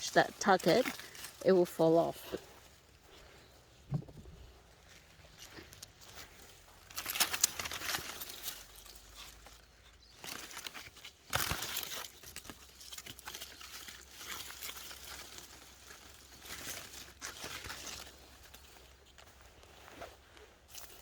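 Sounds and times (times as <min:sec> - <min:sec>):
leaves rustling and crinkling: 0:00.0 - 0:21.0.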